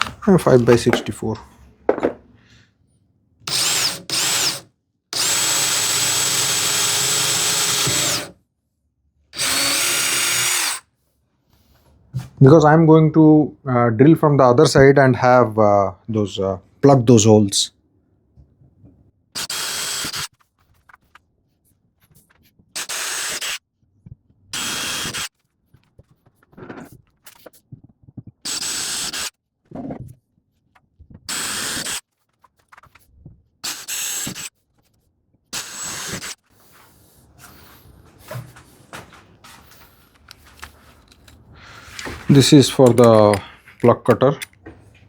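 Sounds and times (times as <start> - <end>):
handling sounds: 0.0 - 2.3, 36.8 - 45.0
drill drilling into wood: 3.5 - 8.3, 9.4 - 10.8, 19.4 - 20.3, 22.8 - 23.6, 24.6 - 25.3, 28.5 - 29.3, 31.3 - 32.0, 33.6 - 34.5, 35.6 - 36.4.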